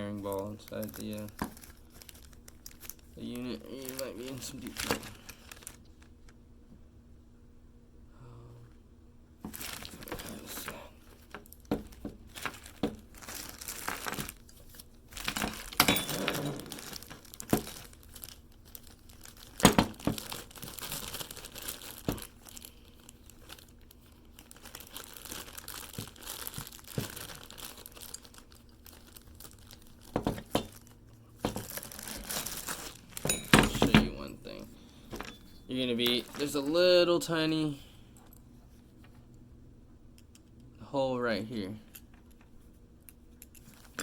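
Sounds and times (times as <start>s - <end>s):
plastic bag crinkling: 0.0s - 6.3s, 9.5s - 37.4s.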